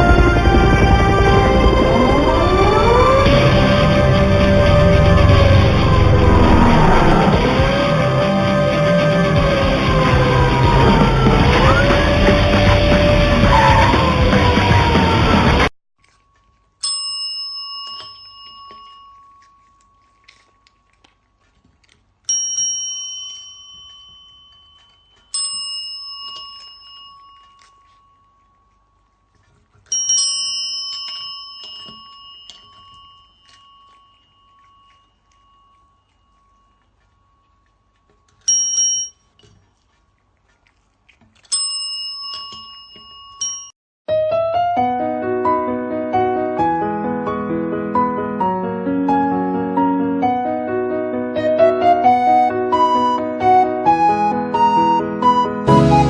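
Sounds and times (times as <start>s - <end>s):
piano music: 0.0s - 15.7s, 44.1s - 56.0s
small metal bell ringing: 16.8s - 20.0s, 22.3s - 28.7s, 29.9s - 37.4s, 38.5s - 39.5s, 41.5s - 43.8s.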